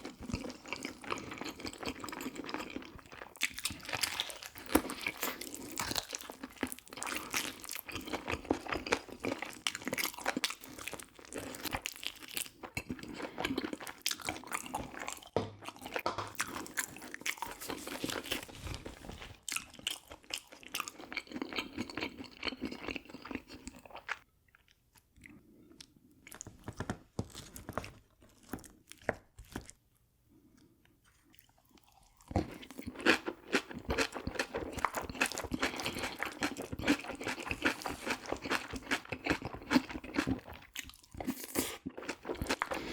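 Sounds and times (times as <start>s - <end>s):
person chewing and crunching food: 0.0s - 42.9s.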